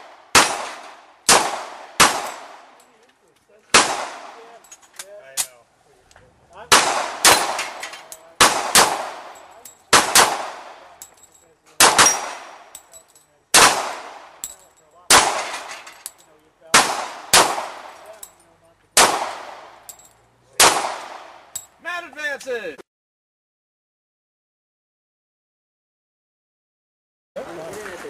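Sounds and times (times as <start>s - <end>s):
gunshots hitting steel plates: 0.0s - 2.9s, 6.7s - 16.2s, 16.8s - 18.4s, 19.0s - 21.7s.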